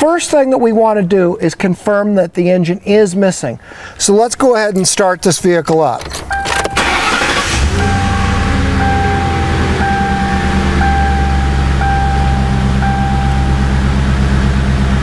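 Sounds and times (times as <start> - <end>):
car engine idling with misfire: 6.0 - 15.0
warning chime beeping: 6.2 - 14.6.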